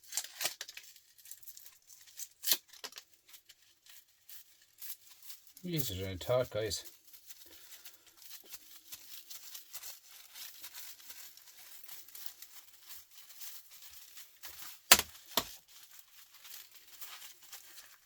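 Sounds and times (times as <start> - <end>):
light scraping and crackling: 0.0 - 18.0
sharp knocks: 14.9 - 15.5.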